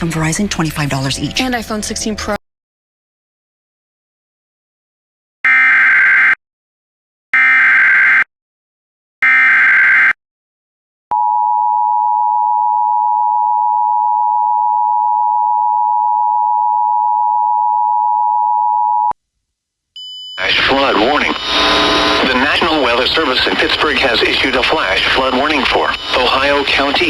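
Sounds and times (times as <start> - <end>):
steady dual tone alert signal: 20.0 - 27.0.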